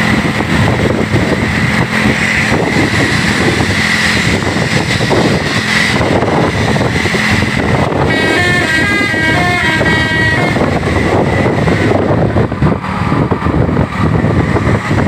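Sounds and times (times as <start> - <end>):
bus engine running: 0.0 - 15.0
multi-tone bus horn tune: 7.9 - 11.2.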